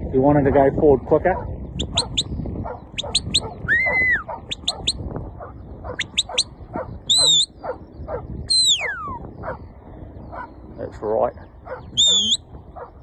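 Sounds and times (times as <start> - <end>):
dog barking: 1.3 - 9.6, 10.3 - 10.6, 11.6 - 13.0
shepherd's whistle commands: 3.0 - 5.0, 5.9 - 6.5, 7.1 - 7.5, 8.5 - 9.2, 12.0 - 12.4.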